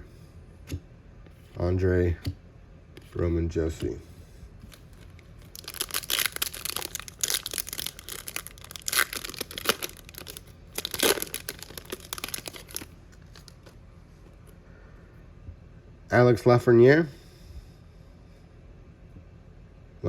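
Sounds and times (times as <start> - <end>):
plastic foil wrapper crinkling: 4.7 - 13.8.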